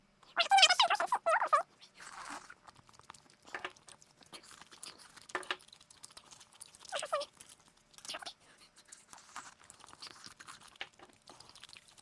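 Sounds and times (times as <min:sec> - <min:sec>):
wet chewing and biting: 0:02.0 - 0:12.0.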